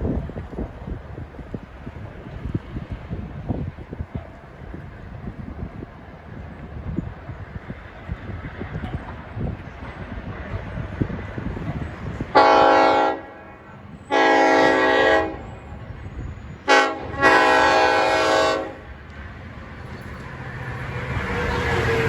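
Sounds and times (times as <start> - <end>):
train rumbling: 0.0 - 22.0
locomotive air horn blasts: 12.3 - 15.5, 16.6 - 18.8.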